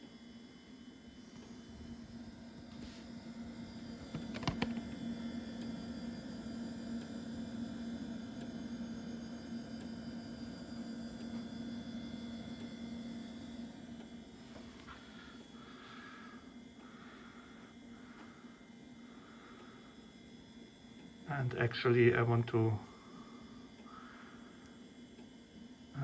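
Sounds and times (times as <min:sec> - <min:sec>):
floppy drive humming: 0:00.8 - 0:26.0
floppy drive clicks: 0:03.9 - 0:05.7.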